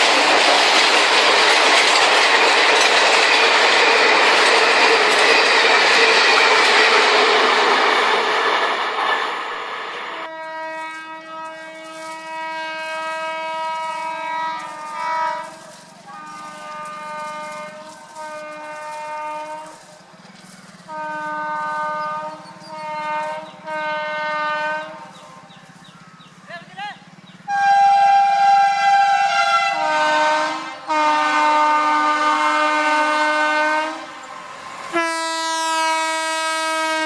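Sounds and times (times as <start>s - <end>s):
train rushing: 0.0s - 37.0s
train horn blasts: 10.2s - 20.0s, 20.8s - 25.3s, 27.4s - 37.0s.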